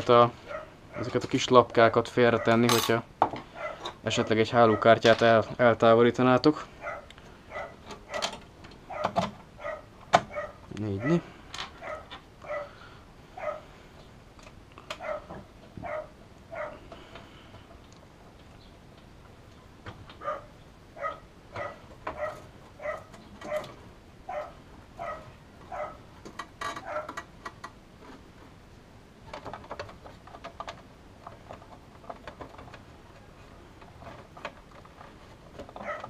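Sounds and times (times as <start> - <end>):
dog barking: 0.4 - 1.2, 3.5 - 3.8, 4.7 - 4.9, 6.8 - 8.3, 8.9 - 11.2, 11.8 - 12.8, 13.4 - 13.7, 15.0 - 16.8, 20.2 - 23.7, 24.3 - 26.0, 26.8 - 27.1, 35.8 - 36.0
small clicks and rattles: 6.8 - 10.5, 29.2 - 36.0.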